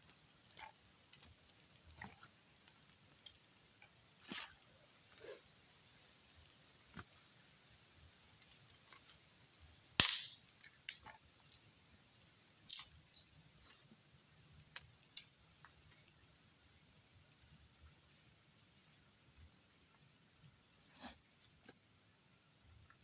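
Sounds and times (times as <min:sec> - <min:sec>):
sharp cracks or snaps: 0:10.0 - 0:11.1, 0:12.6 - 0:13.3, 0:14.7 - 0:15.4.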